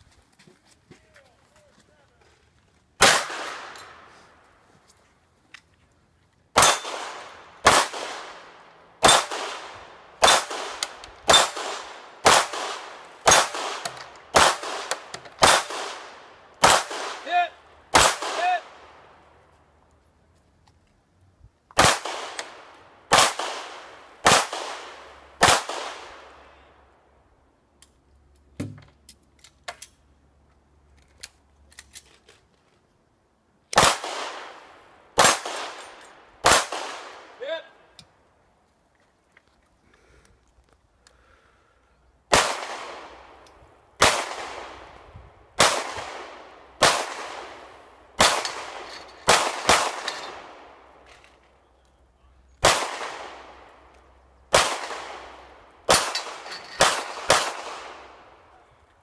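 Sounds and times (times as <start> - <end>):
gunshots with echo: 6.6 - 18.8.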